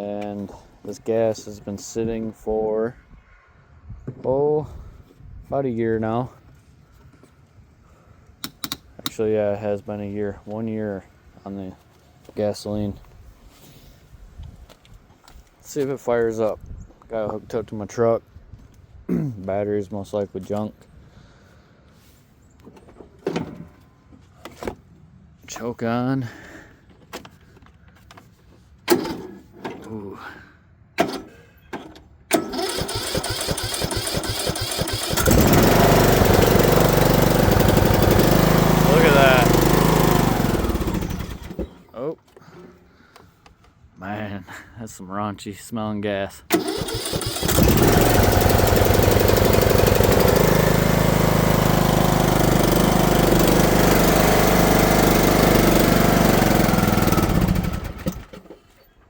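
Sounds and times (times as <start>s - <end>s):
mower engine cranking and starting: 8.4s - 9.2s, 28.9s - 29.9s, 31.0s - 41.9s, 46.5s - 59.0s
starter click: 8.4s - 9.2s.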